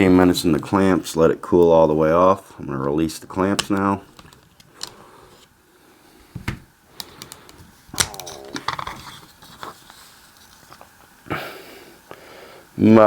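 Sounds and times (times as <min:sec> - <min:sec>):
handling noise: 0:06.4 - 0:11.2.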